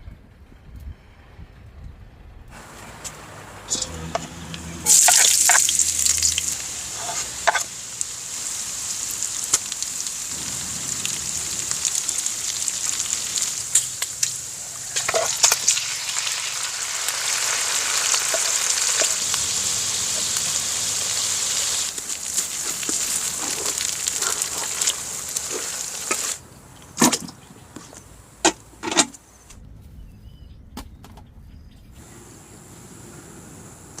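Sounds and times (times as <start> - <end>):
food sizzling in hot oil: 3.7 - 26.4.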